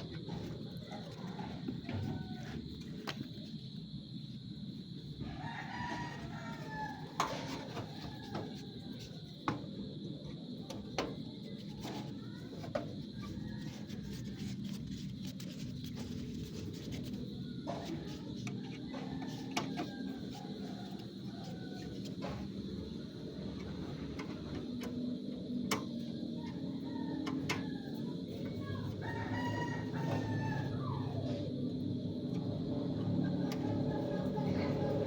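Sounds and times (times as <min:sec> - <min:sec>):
rooster crowing: 0:00.2 - 0:03.4, 0:05.2 - 0:10.0, 0:13.1 - 0:24.4, 0:25.8 - 0:31.7, 0:32.4 - 0:35.0.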